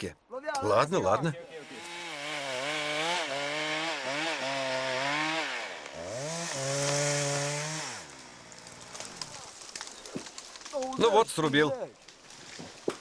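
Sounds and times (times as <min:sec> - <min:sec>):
chainsaw cutting tree trunk: 0:01.6 - 0:10.6
wood cracking: 0:05.8 - 0:13.0.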